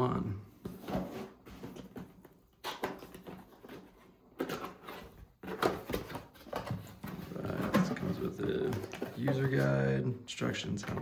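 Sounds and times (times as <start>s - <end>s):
cardboard rustling and scraping: 0.5s - 10.0s.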